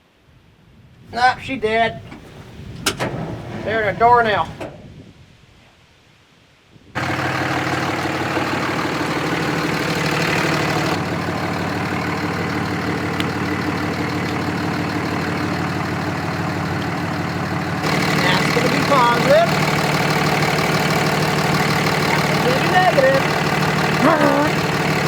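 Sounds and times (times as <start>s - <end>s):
log loader engine idling: 1.1s - 4.6s, 7.0s - 25.0s.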